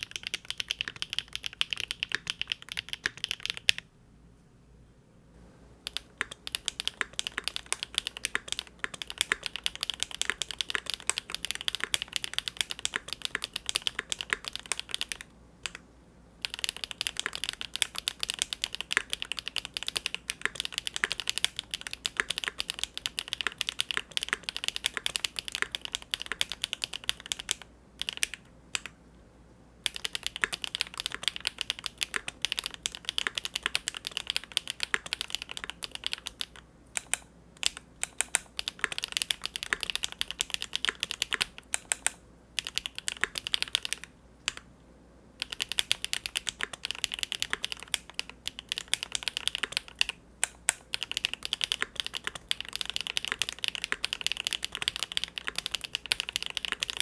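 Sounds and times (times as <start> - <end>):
mechanical keyboard typing: 0.0 - 3.8, 5.8 - 15.8, 16.4 - 29.0, 29.8 - 44.7, 45.4 - 57.0.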